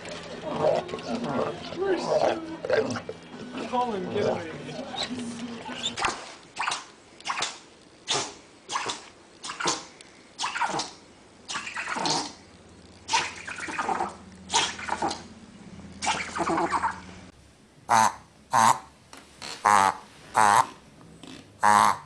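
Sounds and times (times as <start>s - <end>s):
animal making short noisy calls: 19.6s - 20.8s, 21.6s - 22.0s.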